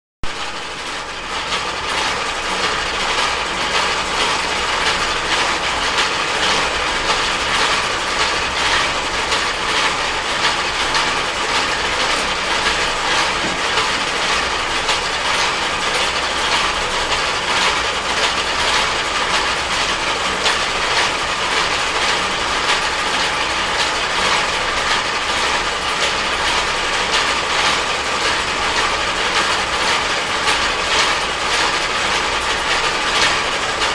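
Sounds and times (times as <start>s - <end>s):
dense mechanical rattle: 0.3s - 33.9s.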